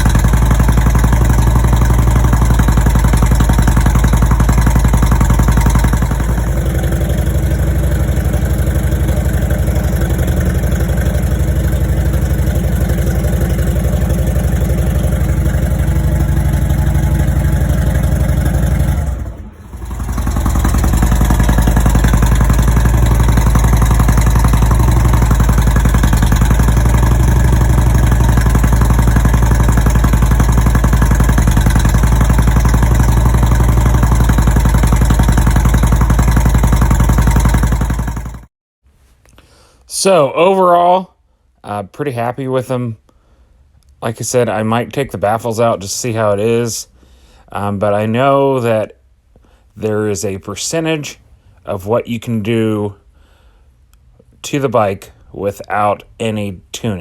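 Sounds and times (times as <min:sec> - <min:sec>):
motorcycle engine idling: 0:00.0 - 0:38.5.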